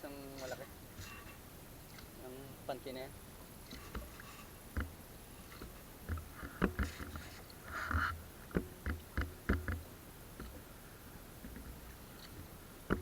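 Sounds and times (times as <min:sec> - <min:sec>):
knocks in wooden boat: 0:08.0 - 0:10.5.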